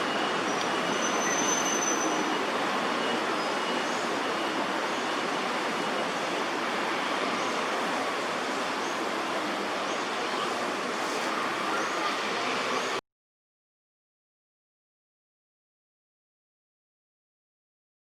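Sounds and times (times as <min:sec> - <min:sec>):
city traffic roar: 0:00.0 - 0:13.0.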